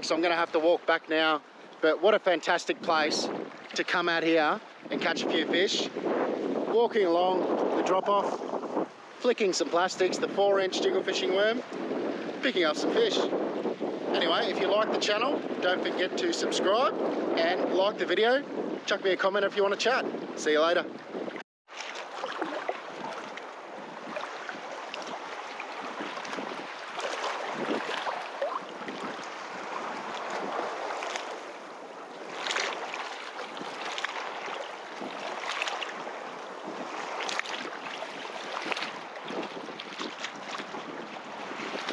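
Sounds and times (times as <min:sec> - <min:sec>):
wind buffeting microphone: 0:01.7 - 0:21.4, 0:22.0 - 0:41.9
surf rushing: 0:21.7 - 0:41.9.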